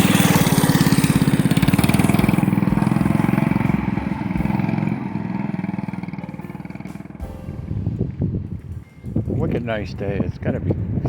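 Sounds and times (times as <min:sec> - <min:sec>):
small engine running steadily: 0:00.0 - 0:07.3.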